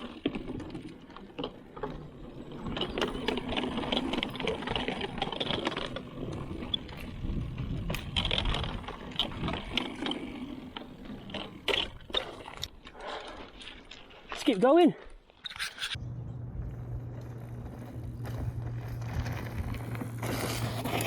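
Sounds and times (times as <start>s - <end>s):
bike tyres rolling on trail: 0.0s - 14.5s, 16.0s - 21.0s
bike clicking and rattling: 0.0s - 14.6s, 15.4s - 21.0s.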